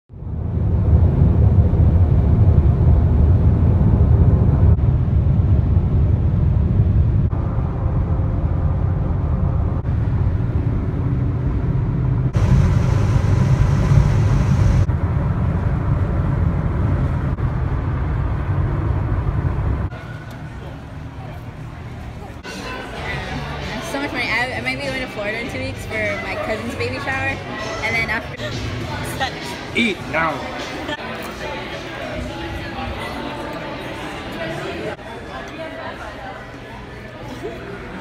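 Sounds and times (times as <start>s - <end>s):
moving vehicle rumble: 0.1s - 22.5s.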